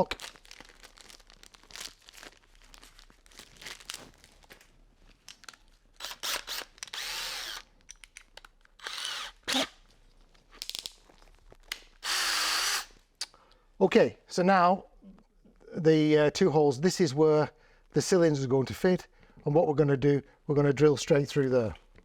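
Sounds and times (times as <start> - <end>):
power drill running: 6.0 - 7.7, 8.8 - 9.8, 12.0 - 12.9
clicks and rattles of handling: 7.8 - 8.8.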